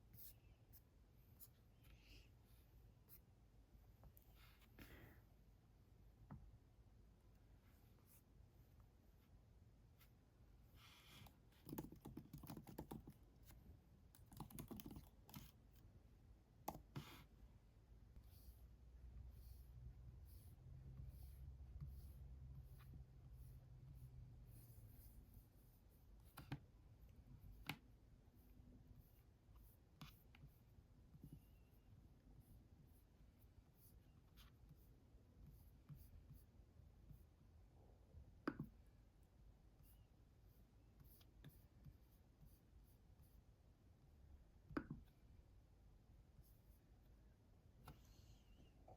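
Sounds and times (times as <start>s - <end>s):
faint keyboard typing: 11.1s - 15.9s, 16.6s - 17.2s.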